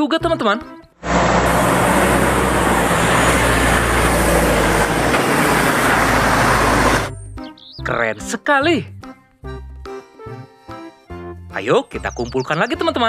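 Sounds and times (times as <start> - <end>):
vehicle engine and road noise: 1.0 - 7.2.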